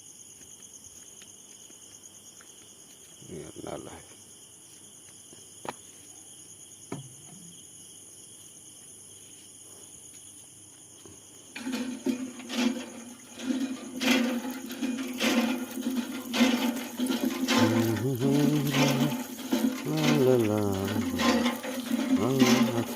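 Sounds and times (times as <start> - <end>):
crickets chirping: 0.0 - 22.9
water gushing from a tap: 11.6 - 22.9.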